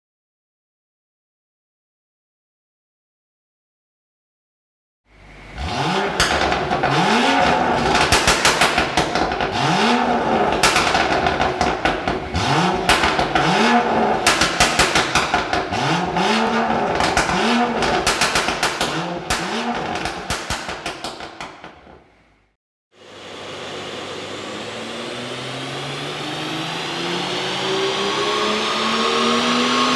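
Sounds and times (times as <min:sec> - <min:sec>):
car engine revving: 0:05.3 - 0:21.4, 0:23.2 - 0:29.9
exhaust pops and crackles: 0:05.9 - 0:22.0.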